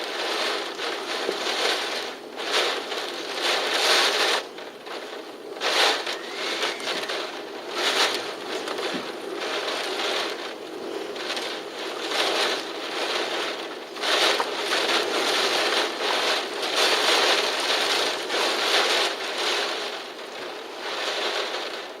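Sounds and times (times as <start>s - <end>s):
wind rushing in gusts: 5.4s - 18.1s.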